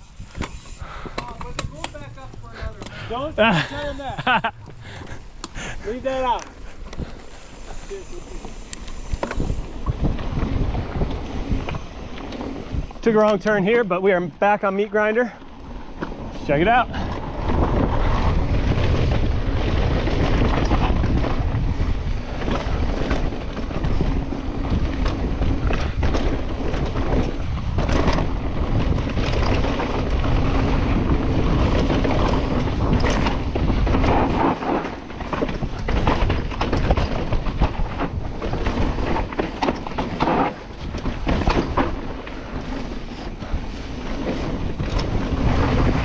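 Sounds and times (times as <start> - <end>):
tyre noise on dirt: 0.0 - 13.8, 15.6 - 46.0
wind rushing over microphone: 0.0 - 14.4, 15.5 - 46.0
bike knocks and rattles: 0.2 - 4.8, 15.9 - 46.0.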